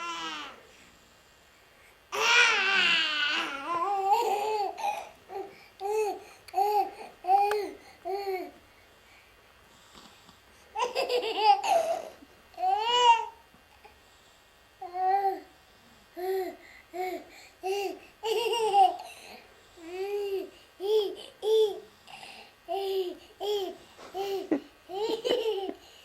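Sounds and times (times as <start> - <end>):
person laughing high-pitched: 24.1 - 25.8.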